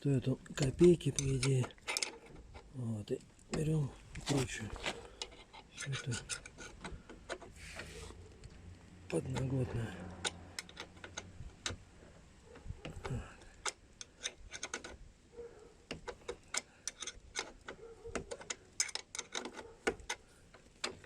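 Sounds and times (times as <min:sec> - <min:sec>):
metal clicks of wrench turning: 0:00.5 - 0:02.7, 0:05.2 - 0:07.9, 0:08.7 - 0:11.8, 0:12.8 - 0:15.0, 0:15.9 - 0:21.0.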